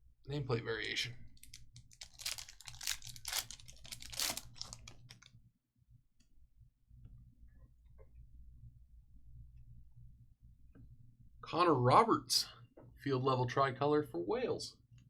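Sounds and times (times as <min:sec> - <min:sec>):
low hum: 0:01.1 - 0:11.9
trading cards flipping: 0:01.4 - 0:05.3.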